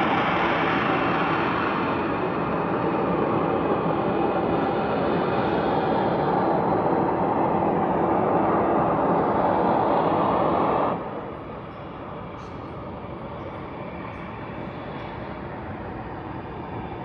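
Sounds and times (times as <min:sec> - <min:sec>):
loud rumbling drone: 0:00.0 - 0:11.6.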